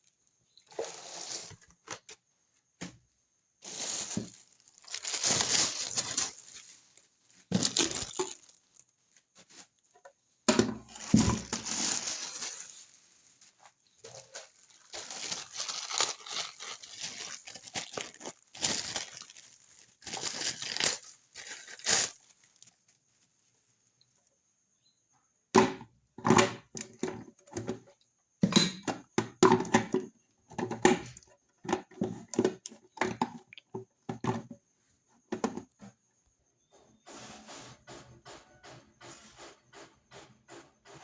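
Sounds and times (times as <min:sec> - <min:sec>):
rustles and knocks of handling: 0:00.6 - 0:23.8
packaging crinkling and tearing: 0:03.6 - 0:09.2, 0:10.9 - 0:22.9.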